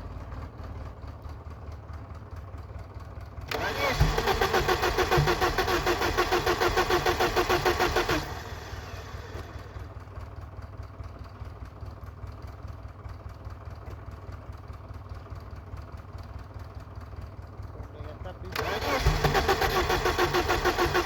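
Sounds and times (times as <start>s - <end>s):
starter cranking engine: 3.1s - 10.2s, 16.6s - 21.0s.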